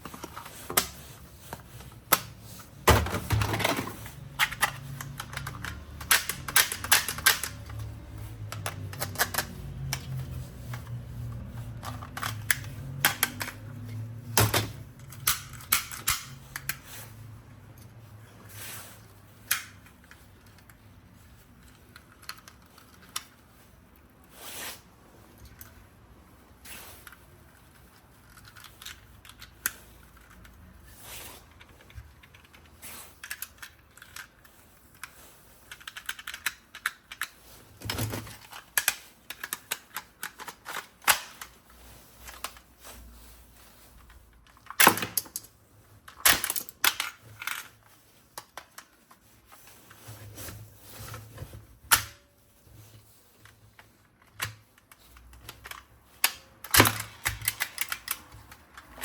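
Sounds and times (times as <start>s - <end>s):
toy gun clicks and knocks: 4.4s - 7.8s, 55.4s - 59.0s.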